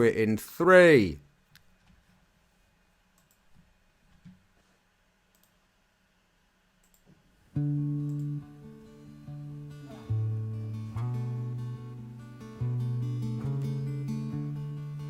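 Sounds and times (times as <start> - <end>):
faint clicks: 3.1 - 3.7, 5.3 - 5.6, 6.8 - 7.2
acoustic guitar plucked notes: 7.6 - 15.0.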